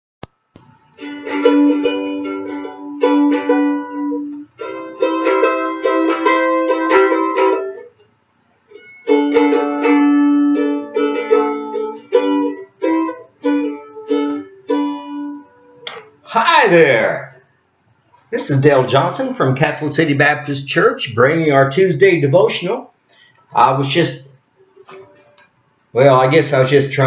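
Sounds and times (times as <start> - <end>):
plucked string instrument strumming: 0.6 - 8.0, 8.7 - 17.1.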